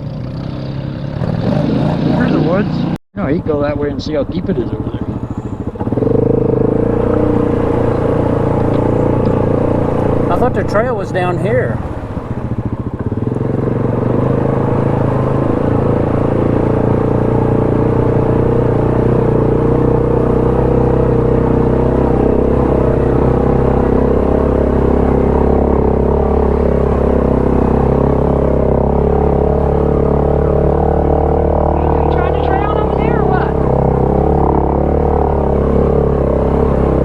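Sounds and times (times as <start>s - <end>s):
atv engine running: 0.0s - 37.0s.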